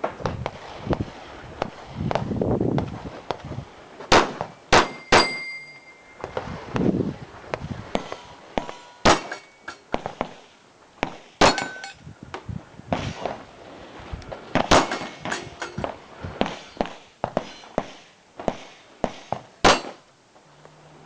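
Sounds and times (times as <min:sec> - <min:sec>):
loud pistol shots: 0:04.1 - 0:05.4, 0:08.0 - 0:09.4, 0:11.4 - 0:11.8, 0:14.6 - 0:15.4, 0:19.6 - 0:20.0.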